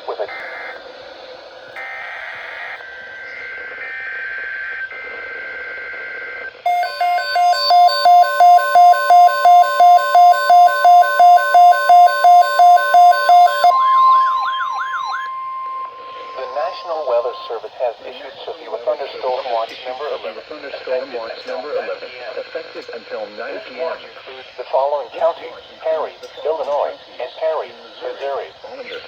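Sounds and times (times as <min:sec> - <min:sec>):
digital data tones: 0:06.7 - 0:17.8
alarm beeping: 0:06.7 - 0:17.9
steady warning tone: 0:06.7 - 0:18.2.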